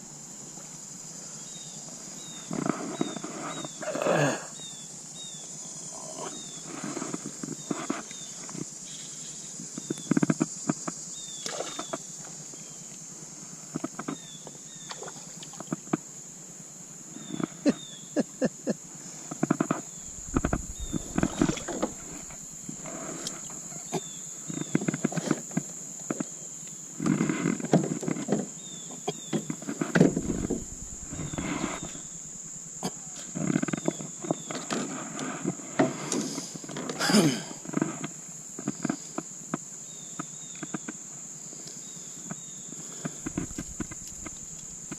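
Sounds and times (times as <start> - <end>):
high-pitched insect drone: 19.8 - 25.6, 29.9 - 34.5, 43.2 - 44.9
low rumbling bumps: 19.9 - 23.2, 30.0 - 32.8, 43.2 - 44.9.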